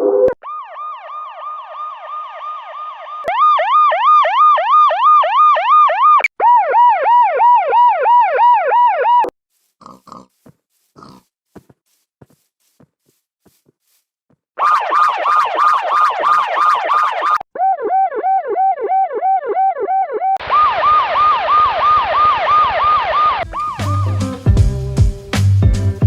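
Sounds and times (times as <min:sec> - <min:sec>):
police siren yelp: 0:00.4 - 0:09.3, 0:14.6 - 0:24.4.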